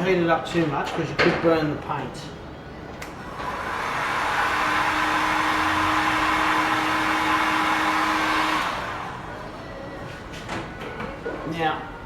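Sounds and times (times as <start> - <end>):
hot-air heater blowing: 3.0 - 10.2.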